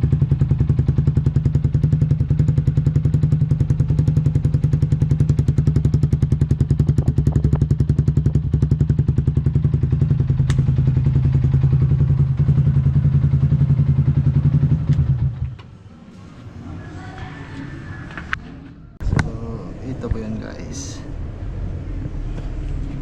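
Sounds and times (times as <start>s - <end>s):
motorcycle engine idling: 0.0s - 15.8s.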